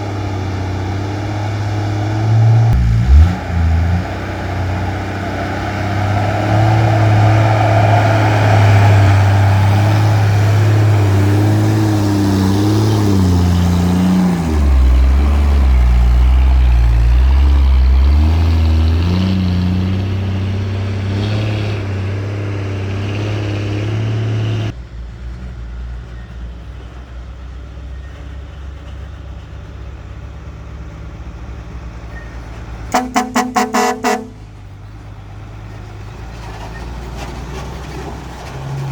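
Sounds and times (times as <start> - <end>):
diesel truck engine under load: 0.0 - 38.9
horn short toots: 32.9 - 34.5.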